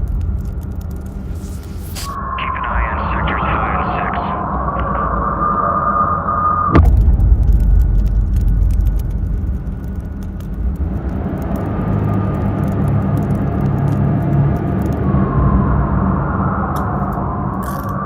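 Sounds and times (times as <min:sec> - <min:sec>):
deep steady rumble: 0:00.0 - 0:18.0
faint clicks: 0:07.5 - 0:15.0.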